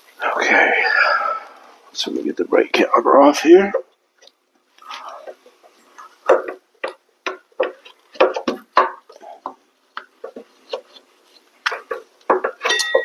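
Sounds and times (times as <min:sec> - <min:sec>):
metal clinks and knocks: 0:11.7 - 0:13.0.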